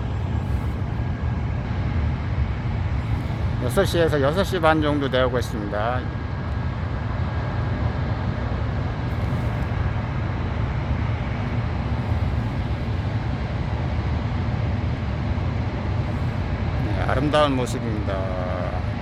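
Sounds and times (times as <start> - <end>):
steady low rumble: 0.0 - 19.0
even hiss: 8.4 - 19.0.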